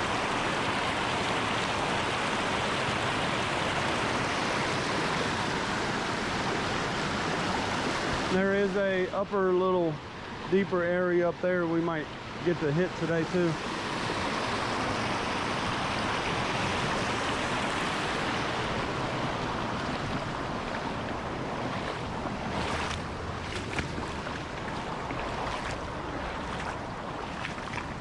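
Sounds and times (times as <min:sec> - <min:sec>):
water rushing over spillway: 0:00.0 - 0:28.0
sharp splashes and clicks: 0:19.8 - 0:28.0.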